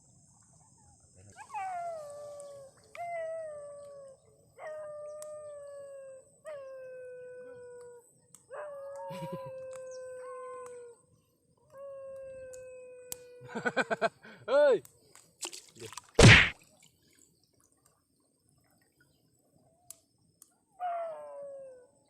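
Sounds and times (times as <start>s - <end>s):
dog howling: 1.3s - 11.0s, 20.8s - 22.0s.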